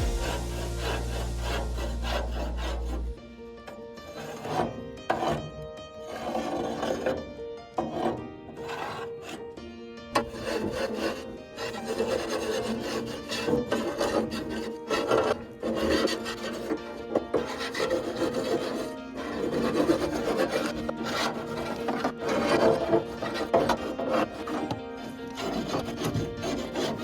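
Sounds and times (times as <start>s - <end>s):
scraper scraping metal: 0.0s - 27.0s.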